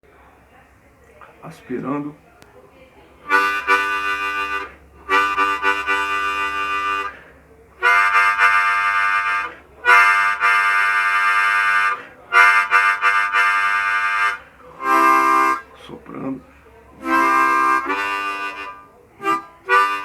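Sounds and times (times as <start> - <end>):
harmonica playing held chords: 3.3 - 16.0, 16.9 - 20.0
short breaths: 7.0 - 7.5, 11.9 - 12.2.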